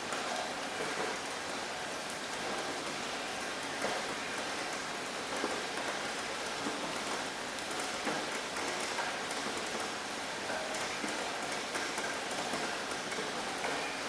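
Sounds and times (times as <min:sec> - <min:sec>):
rain on hard surface: 0:00.0 - 0:14.0.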